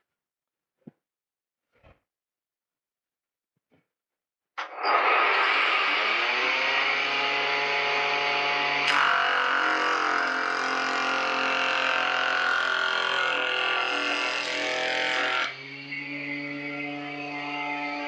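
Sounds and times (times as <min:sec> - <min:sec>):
jointer cutterhead planing wood: 0:05.6 - 0:15.8.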